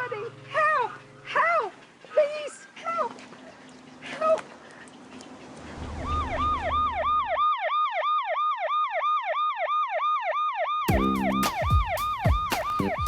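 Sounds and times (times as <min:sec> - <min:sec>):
siren yelping: 0:05.6 - 0:13.0
drum-like hits: 0:10.9 - 0:13.0
low chords: 0:10.9 - 0:13.0.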